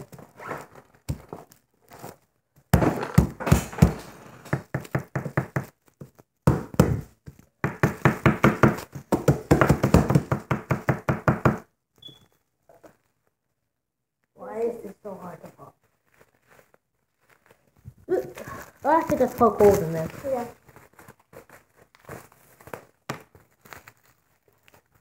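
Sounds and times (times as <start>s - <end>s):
bubble wrap being pounded: 0.0s - 11.8s, 15.8s - 25.0s
plastic crinkling: 15.5s - 25.0s.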